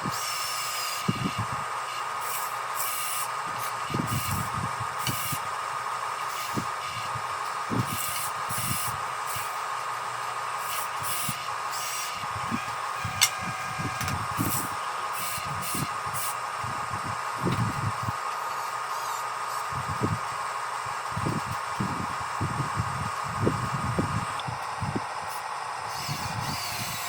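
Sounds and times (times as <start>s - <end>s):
electric motors whining: 0.0s - 27.0s
sharp click: 13.2s - 13.4s.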